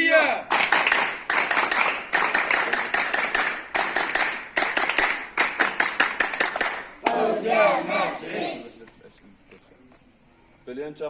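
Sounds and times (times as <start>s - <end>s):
group clapping in rhythm: 0.5s - 8.2s.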